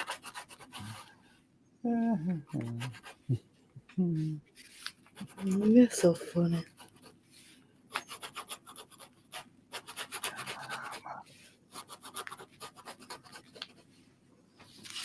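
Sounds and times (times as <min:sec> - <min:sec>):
pen scratching on paper: 0:00.0 - 0:01.1, 0:02.5 - 0:03.3, 0:05.1 - 0:13.9.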